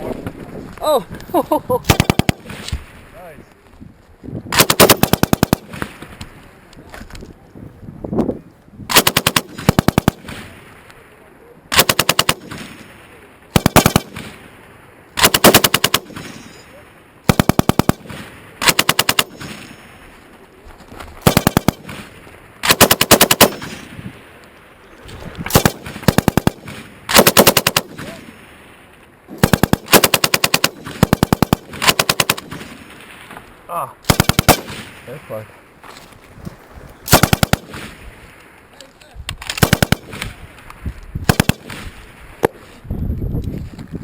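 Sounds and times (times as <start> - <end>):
machine gun firing bursts: 1.9 - 2.6, 4.5 - 5.9, 8.9 - 10.4, 11.7 - 12.7, 13.5 - 14.3, 15.2 - 16.5, 17.3 - 19.7, 21.2 - 23.9, 25.4 - 28.2, 29.3 - 32.8, 34.0 - 34.9, 37.1 - 37.9, 39.5 - 40.3, 41.3 - 41.9.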